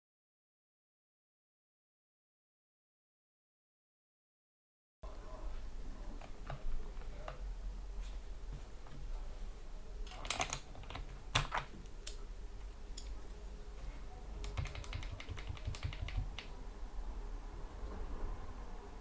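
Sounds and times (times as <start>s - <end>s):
keyboard typing: 10.1s - 12.2s, 14.4s - 16.6s.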